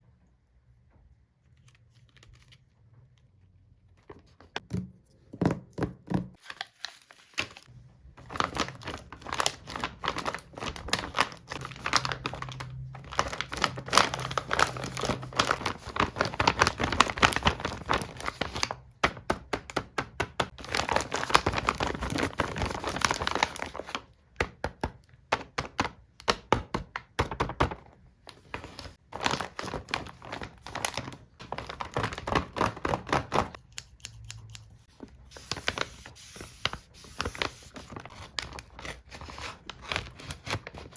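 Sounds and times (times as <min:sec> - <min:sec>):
plastic and paper packaging crinkling: 0:06.4 - 0:18.9, 0:20.5 - 0:24.1, 0:27.4 - 0:33.6, 0:34.4 - 0:40.9.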